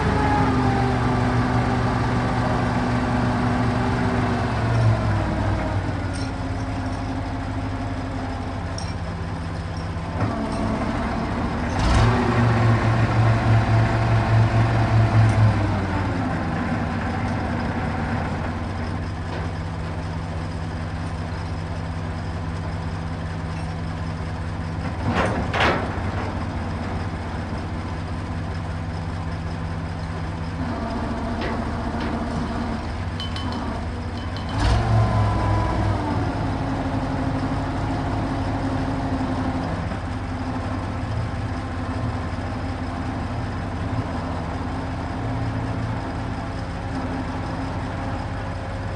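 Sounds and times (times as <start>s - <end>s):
diesel engine running: 0.0s - 48.9s
sharp metal clanks: 6.1s - 7.3s, 8.7s - 10.8s, 33.1s - 35.0s.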